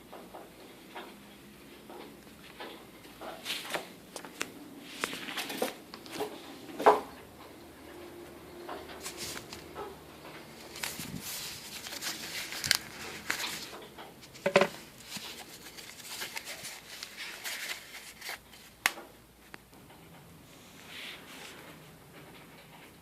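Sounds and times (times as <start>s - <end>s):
packaging rustling and scraping: 2.4s - 6.4s, 8.8s - 18.8s.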